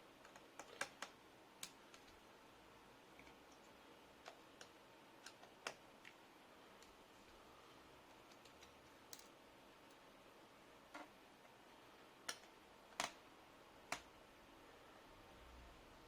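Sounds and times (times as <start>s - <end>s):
screwdriver and small parts clicking: 8.3s - 9.3s.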